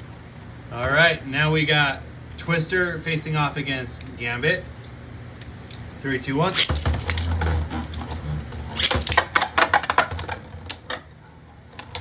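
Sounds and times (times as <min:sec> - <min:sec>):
spinning tops in plastic stadium: 0:06.6 - 0:11.1.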